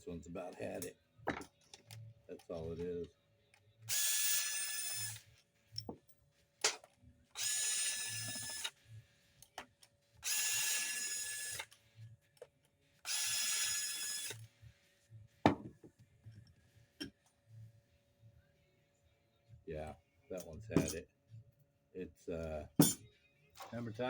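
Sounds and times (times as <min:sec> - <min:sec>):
cordless drill running: 0:03.9 - 0:05.2, 0:07.4 - 0:08.8, 0:10.2 - 0:11.7, 0:13.0 - 0:14.4.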